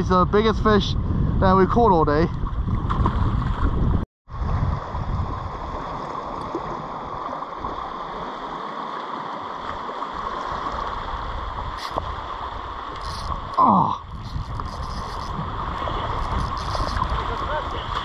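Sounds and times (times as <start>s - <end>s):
wind rumbling on microphone: 0.0s - 8.6s, 9.6s - 18.0s
sea water washing around rocks: 14.2s - 18.0s.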